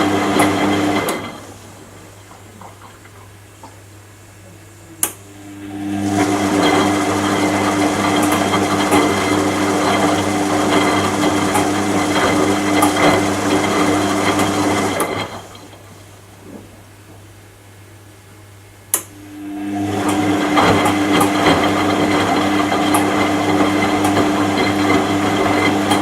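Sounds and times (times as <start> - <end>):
washing machine motor hum: 0.0 - 26.0
rough mechanical noise: 5.3 - 16.8.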